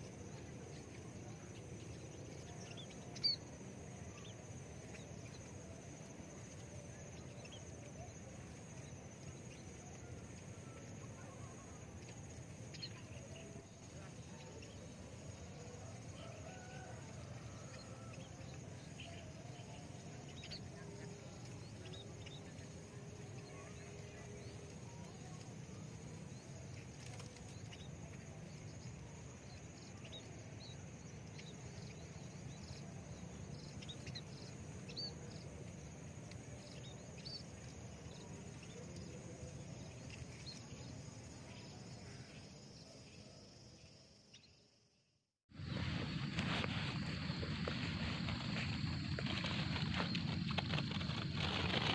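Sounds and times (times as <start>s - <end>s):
small birds chirping: 0.0s - 44.8s, 45.6s - 51.9s
insect hum: 0.0s - 51.9s.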